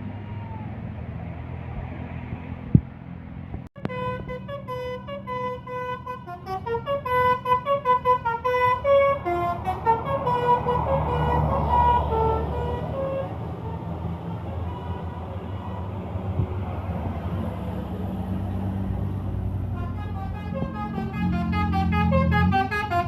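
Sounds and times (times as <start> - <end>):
bus engine rumble: 0.0 - 23.0
musical bus horn melody: 3.8 - 16.1, 19.6 - 23.0.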